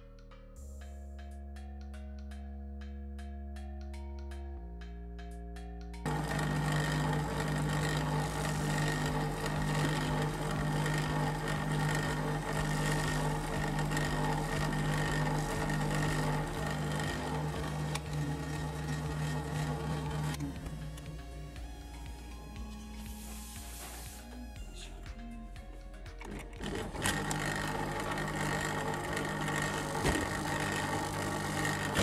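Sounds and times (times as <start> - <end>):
drill press running: 6.1 - 23.1, 26.2 - 32.0.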